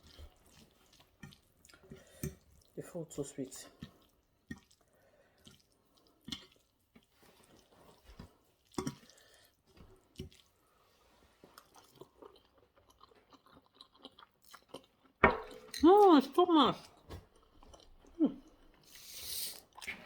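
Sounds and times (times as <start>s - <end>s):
faint wet chewing: 0.0s - 15.8s, 16.8s - 20.0s.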